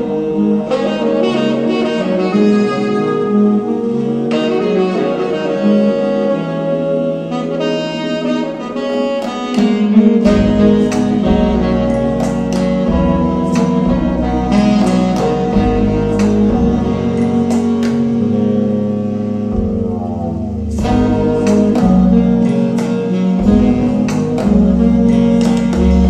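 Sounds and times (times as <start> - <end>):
horn melody: 0.0 - 26.0
low bass line: 10.2 - 26.0.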